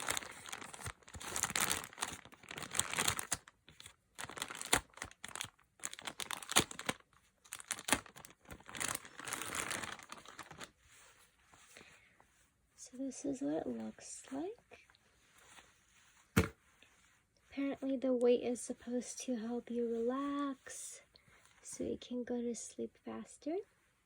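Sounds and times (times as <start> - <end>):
packaging crinkling and tearing: 0.0 - 10.7.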